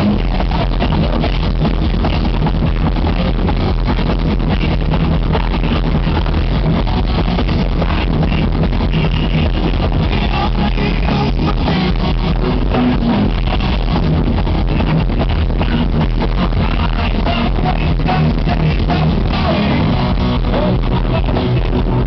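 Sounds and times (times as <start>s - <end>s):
heavy metal band playing live: 0.0s - 22.0s.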